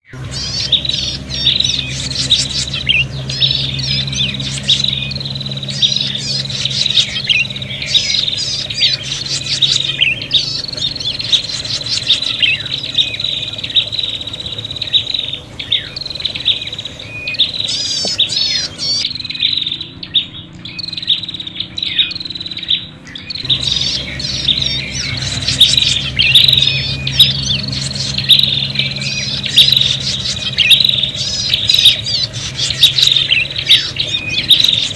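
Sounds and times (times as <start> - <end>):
birds chattering calls: 0.0 - 34.9
steady low hum: 0.0 - 34.9.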